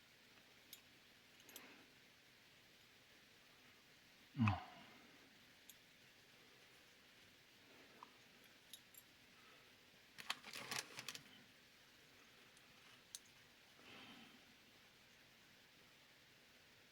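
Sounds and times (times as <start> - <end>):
small hard parts clicking and rattling: 10.2 - 11.4.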